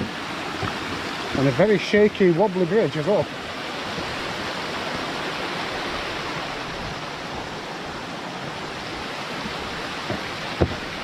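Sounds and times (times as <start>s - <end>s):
water falling: 0.0s - 6.7s, 7.6s - 11.0s
short knocks: 10.0s - 11.0s.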